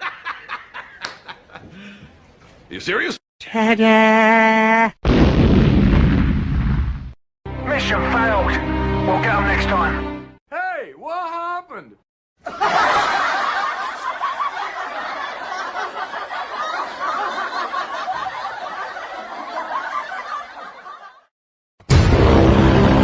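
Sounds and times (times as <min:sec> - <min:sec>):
crowd laughing: 0:00.0 - 0:02.1, 0:12.4 - 0:21.3
loud sudden sound: 0:05.0 - 0:07.2, 0:21.8 - 0:23.0.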